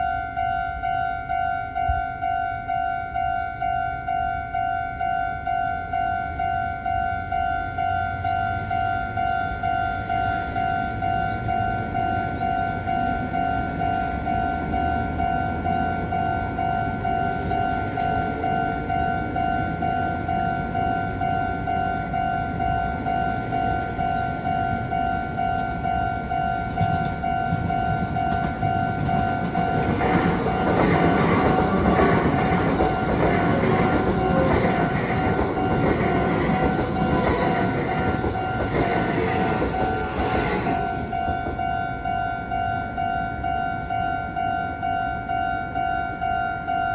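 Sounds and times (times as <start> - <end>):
train rumble: 6.2 - 43.0
level crossing alarm ringing: 15.4 - 42.3.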